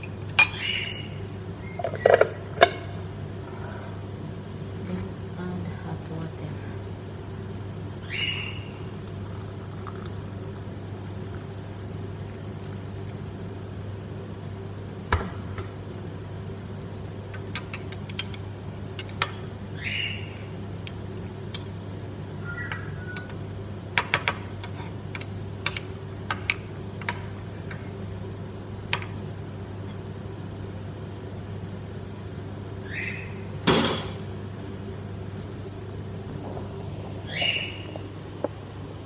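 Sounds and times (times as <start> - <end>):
steady low hum: 0.0 - 39.0
utensils and glassware clinking: 1.8 - 3.0, 33.6 - 34.3, 36.2 - 39.0.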